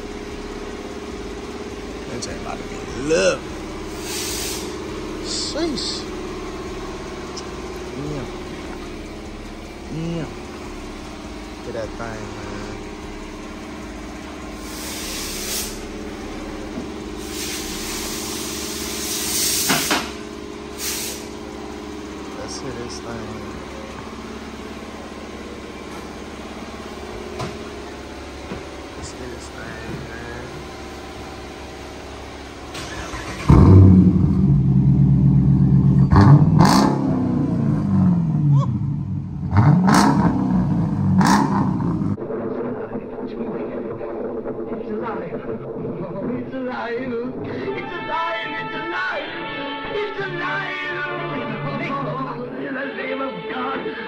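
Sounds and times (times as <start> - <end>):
car engine idling: 0.0 - 42.2
hissing bursts: 3.9 - 4.8, 14.6 - 16.0, 17.2 - 21.4.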